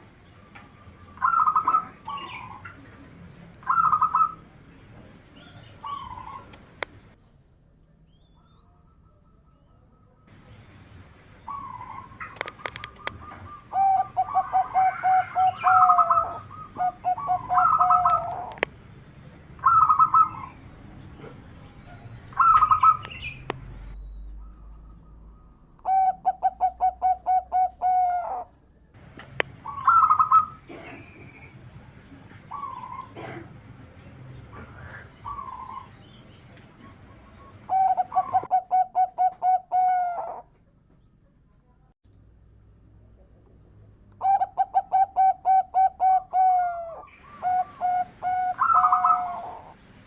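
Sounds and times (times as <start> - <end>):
dove cooing: 0.5 - 4.5, 5.4 - 6.6, 11.5 - 18.7, 19.6 - 20.6, 22.3 - 23.3, 24.4 - 28.5, 29.6 - 31.4, 32.3 - 33.5, 34.5 - 36.0, 36.7 - 40.5, 44.2 - 49.8.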